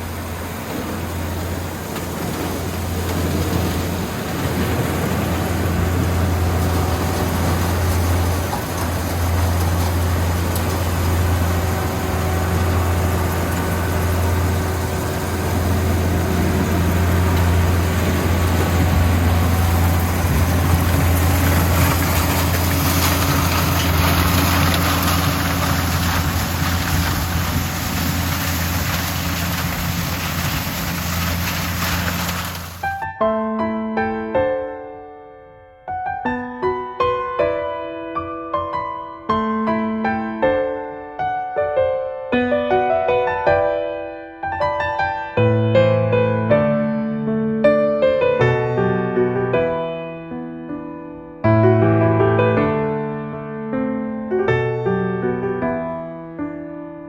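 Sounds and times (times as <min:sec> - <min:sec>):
combine harvester engine running: 0:00.0 - 0:33.0.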